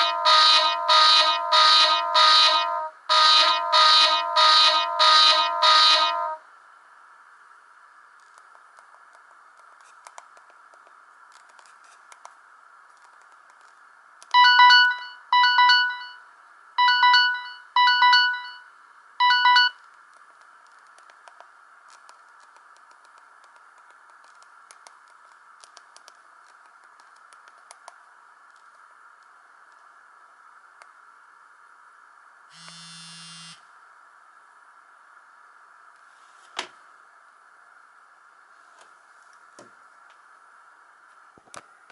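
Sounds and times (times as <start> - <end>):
phone ringtone melody: 0.0 - 6.4, 16.8 - 18.6
faint hiss: 19.9 - 41.9.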